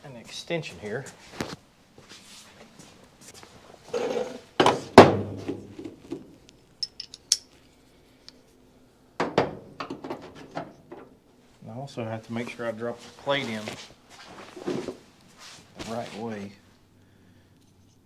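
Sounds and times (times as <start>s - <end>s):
steel parts clinking on sheet metal: 6.8s - 7.6s.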